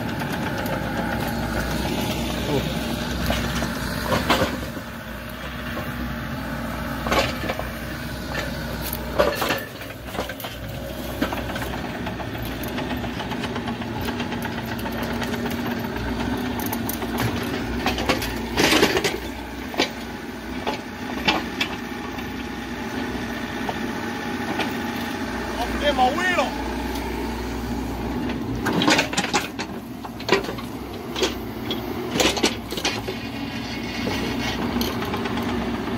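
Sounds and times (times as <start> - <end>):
excavator engine running: 0.0 - 35.9
sharp metal clanks and knocks: 8.3 - 11.7, 28.6 - 35.5.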